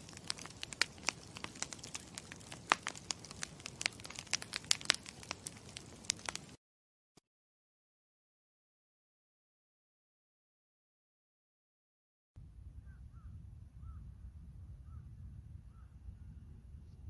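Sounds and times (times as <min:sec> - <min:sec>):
campfire crackling and popping: 0:00.0 - 0:06.6.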